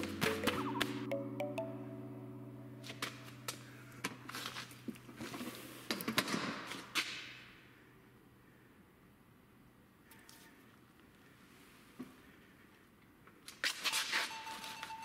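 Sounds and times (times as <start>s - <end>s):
held music chord: 0.0s - 4.3s.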